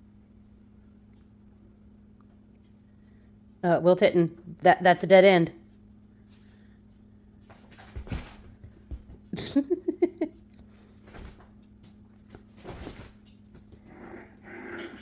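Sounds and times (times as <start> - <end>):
scuffles and knocks: 7.4 - 9.4.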